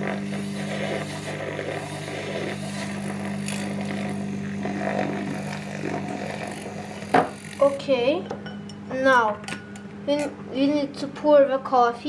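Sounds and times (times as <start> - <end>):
whisk churning milk: 0.0 - 8.0
milk frother motor humming: 0.0 - 9.4.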